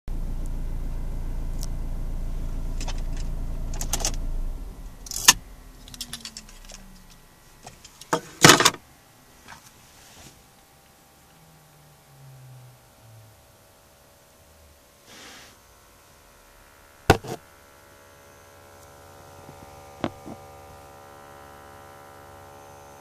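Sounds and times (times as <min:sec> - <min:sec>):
car engine hum: 0:00.0 - 0:15.0, 0:15.6 - 0:23.0
faint falling whine: 0:00.1 - 0:15.0.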